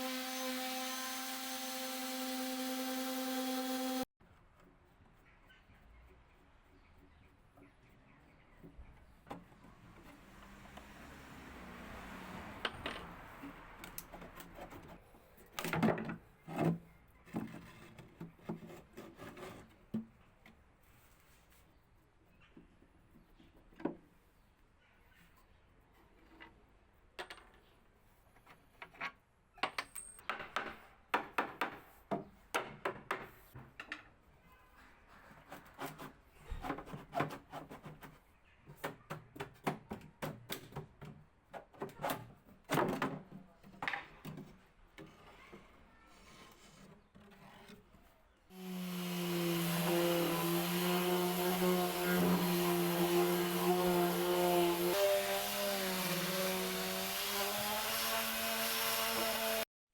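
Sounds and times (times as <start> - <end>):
power tool humming and hissing: 0.0 - 4.0, 48.6 - 59.6.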